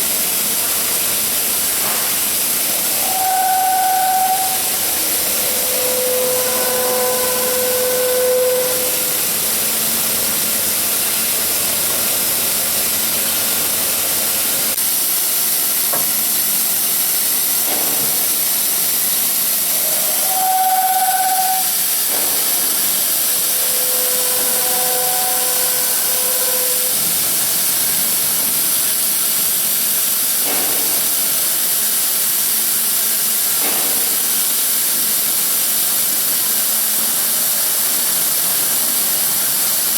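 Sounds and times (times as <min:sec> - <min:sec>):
drilling machine hiss: 0:00.0 - 0:39.9
whining drive motors: 0:02.6 - 0:10.3.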